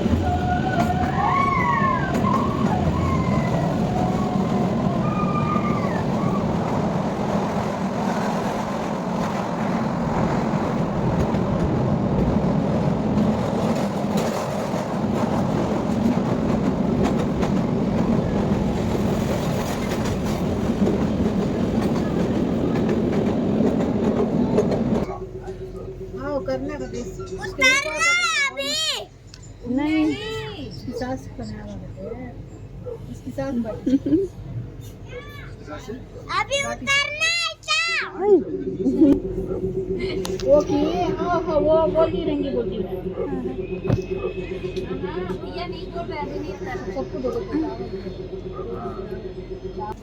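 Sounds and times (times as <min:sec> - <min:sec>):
train running rumble: 0:00.0 - 0:50.0
high-pitched rising falling tones: 0:38.1 - 0:50.0.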